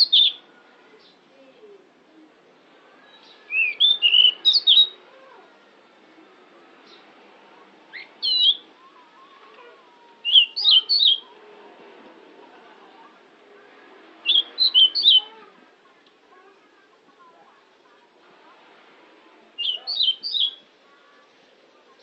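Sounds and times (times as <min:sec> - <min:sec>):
bird singing whistled notes: 0:00.0 - 0:00.4, 0:03.2 - 0:05.0, 0:07.9 - 0:08.6, 0:10.2 - 0:11.3, 0:14.2 - 0:15.3, 0:19.6 - 0:20.7.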